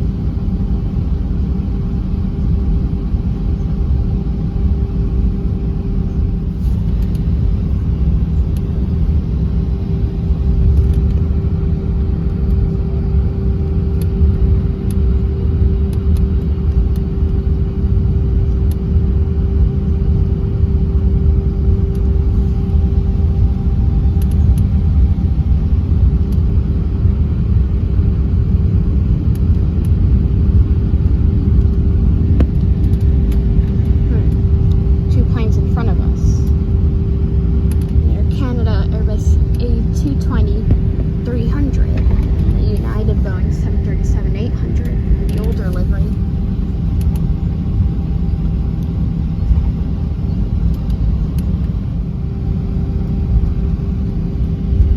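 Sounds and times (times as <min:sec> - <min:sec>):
aircraft cabin rumble: 0:00.0 - 0:54.9
constant hum tone: 0:00.0 - 0:54.9.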